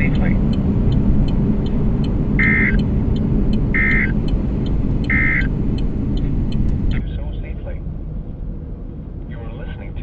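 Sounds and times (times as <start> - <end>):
car road noise: 0.0 - 10.0
high buzzy beeps: 2.4 - 2.8, 3.8 - 4.1, 5.1 - 5.5.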